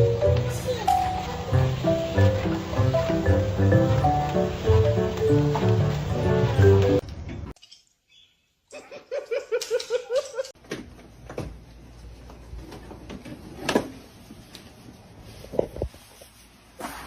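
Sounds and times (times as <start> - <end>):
person laughing: 8.7 - 10.5.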